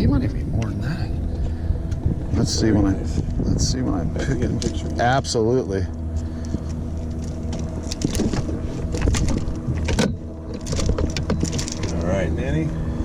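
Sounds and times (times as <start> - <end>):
boat motor humming: 0.0 - 13.0
knocks and clatters on boat: 6.5 - 12.2.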